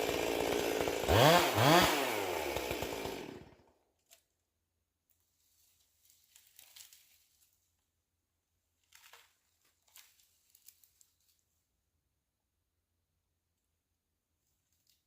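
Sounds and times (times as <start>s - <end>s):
faint crackling rustles: 5.2s - 7.7s.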